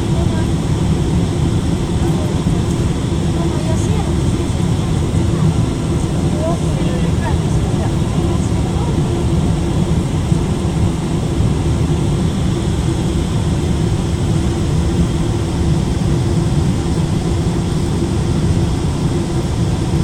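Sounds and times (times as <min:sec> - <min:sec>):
airliner cabin engine rumble: 0:00.0 - 0:20.0.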